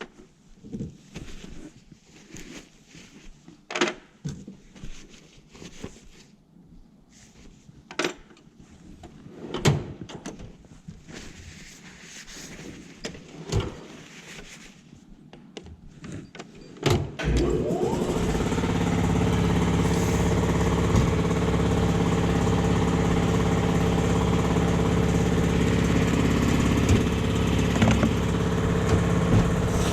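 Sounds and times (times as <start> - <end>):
engine starting and running: 17.2 - 29.9.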